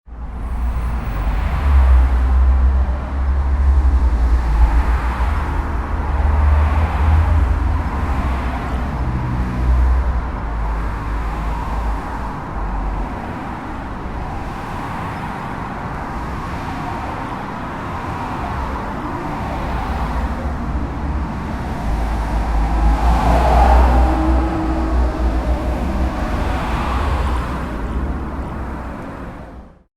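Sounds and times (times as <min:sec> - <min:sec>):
tyre and road noise: 0:00.1 - 0:29.8
vehicle passing close by: 0:18.0 - 0:29.4
low engine rumble: 0:19.0 - 0:29.2.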